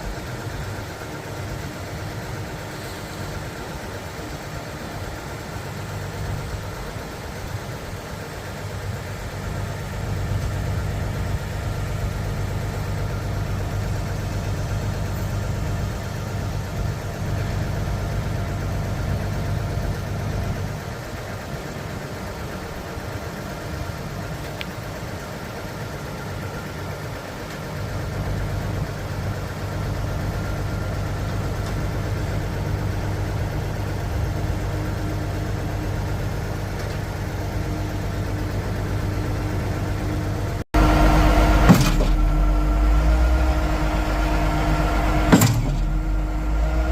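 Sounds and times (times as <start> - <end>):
truck diesel engine running: 0.0 - 46.9.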